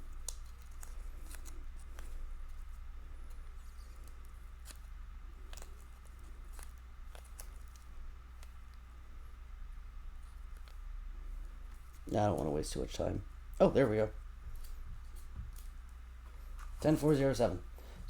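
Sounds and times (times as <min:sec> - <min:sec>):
trading cards rustling: 0:00.0 - 0:08.9
steady low hum: 0:00.0 - 0:18.0.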